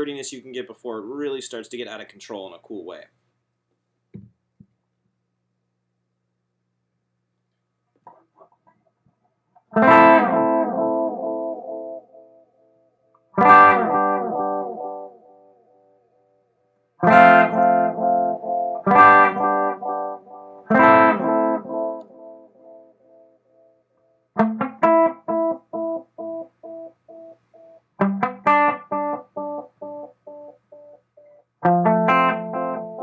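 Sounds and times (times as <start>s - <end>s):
electric guitar chords with delay: 9.7s - 16.4s, 17.0s - 33.0s.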